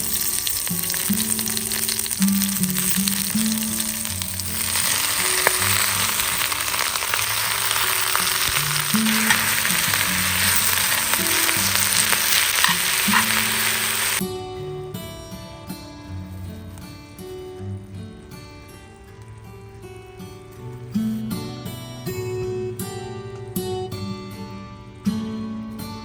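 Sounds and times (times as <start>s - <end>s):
food sizzling in a pan: 0.0s - 14.2s
quiet background music: 0.0s - 26.0s.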